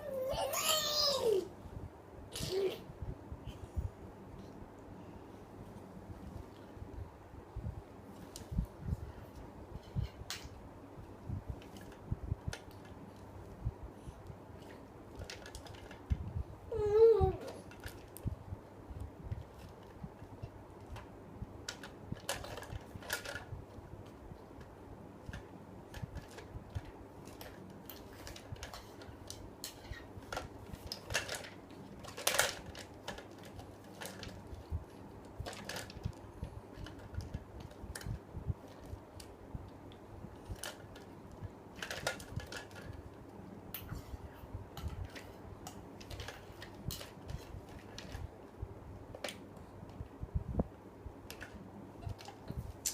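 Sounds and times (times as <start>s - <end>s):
steady low hum: 0.0s - 52.9s.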